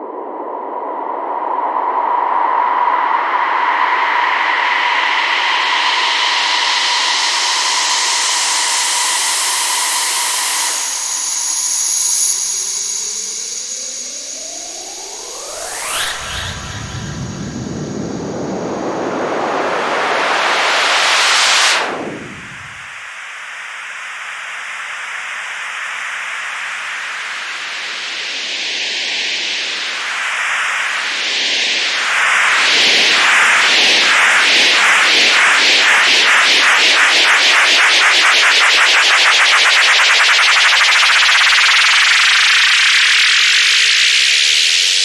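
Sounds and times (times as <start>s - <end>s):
white noise sweep: 2.1s - 44.8s
high whistle-like tone: 3.6s - 19.5s
synth riser: 3.8s - 23.0s.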